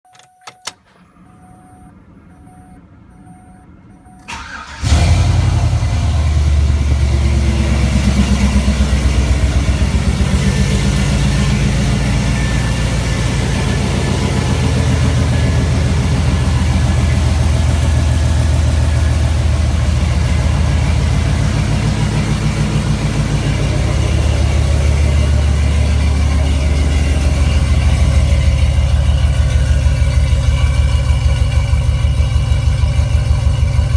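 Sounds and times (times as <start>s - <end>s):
faint beeping: 0.1s - 4.3s
car engine cranking and starting: 0.1s - 33.9s
car engine idling: 0.8s - 33.9s.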